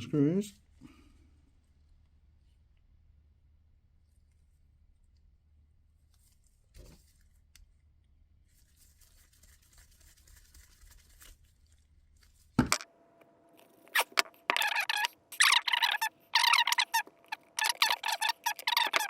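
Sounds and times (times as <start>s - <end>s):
screwdriver squeaky scraping: 13.6s - 19.0s.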